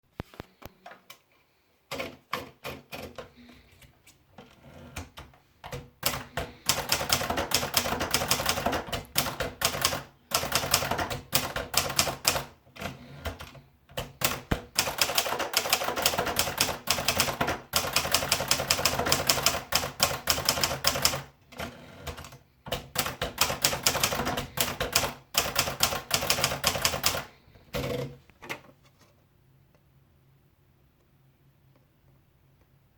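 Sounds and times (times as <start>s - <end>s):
manual typewriter typing: 1.9s - 3.5s, 4.4s - 28.1s.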